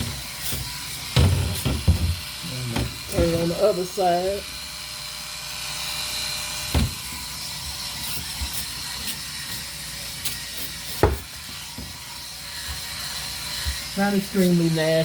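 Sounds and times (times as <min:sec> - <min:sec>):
electric scrub brush whirring: 0:00.0 - 0:15.0
sharp knocks: 0:11.0 - 0:11.3.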